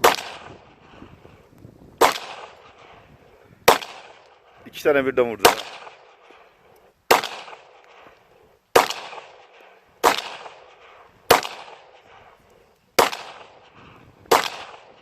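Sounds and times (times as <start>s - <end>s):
pistol shots with echo: 0.0s - 0.6s, 2.0s - 3.0s, 3.6s - 4.6s, 5.3s - 6.4s, 7.1s - 8.1s, 8.7s - 12.3s, 13.0s - 15.0s.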